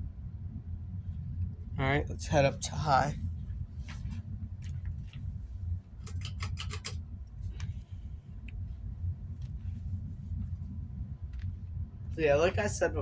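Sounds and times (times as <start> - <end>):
ceiling fan running: 0.0 - 13.0
furnace running: 0.0 - 13.0
light clicks: 6.0 - 7.0.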